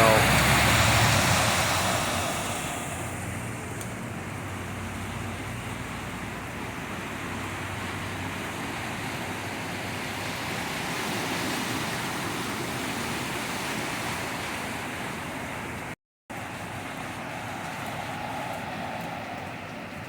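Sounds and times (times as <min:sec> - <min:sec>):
heavy rain: 0:00.0 - 0:11.1
rushing floodwater: 0:00.0 - 0:20.0.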